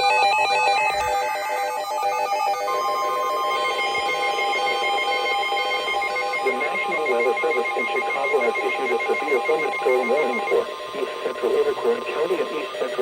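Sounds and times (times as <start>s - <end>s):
rapid beeping tones: 0.0s - 13.0s
steady electronic alert tone: 2.0s - 12.2s.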